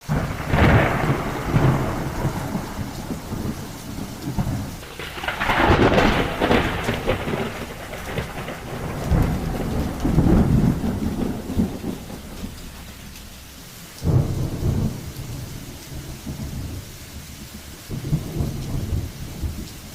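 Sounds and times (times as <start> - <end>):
steady rain: 0.0 - 19.9
deep rumbling: 0.2 - 15.6.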